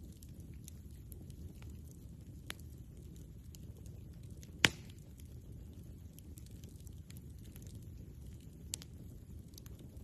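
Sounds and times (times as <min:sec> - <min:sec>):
burning wood crackling: 0:00.0 - 0:10.0
sharp pop of fire: 0:04.6 - 0:05.1.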